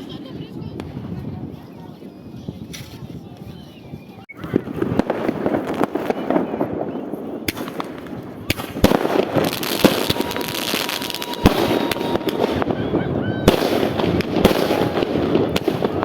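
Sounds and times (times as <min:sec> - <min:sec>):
fireworks booms: 0:00.0 - 0:03.3, 0:04.3 - 0:16.0
fireworks cracks and bangs: 0:04.4 - 0:16.0
thin steady whistle: 0:09.8 - 0:12.4.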